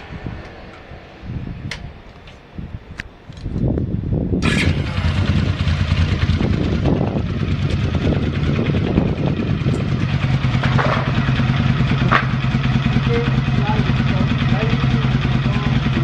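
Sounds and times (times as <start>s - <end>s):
motorcycle engine starting and idling: 4.4s - 16.0s.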